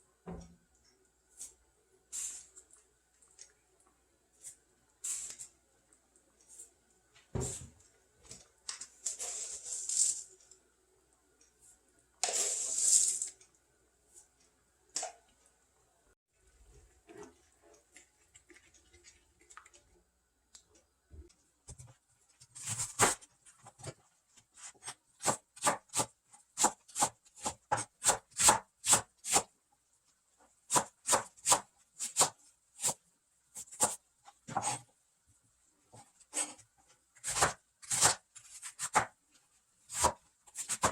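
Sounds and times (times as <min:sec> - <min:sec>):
knife chopping on cutting board: 0:24.8 - 0:29.5, 0:30.7 - 0:33.0, 0:37.2 - 0:39.1, 0:39.9 - 0:40.9.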